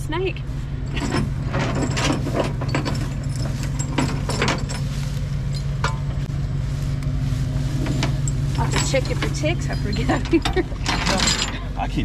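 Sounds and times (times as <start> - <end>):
vehicle engine idling: 0.0 - 12.0
footsteps through tall weeds: 4.8 - 10.7.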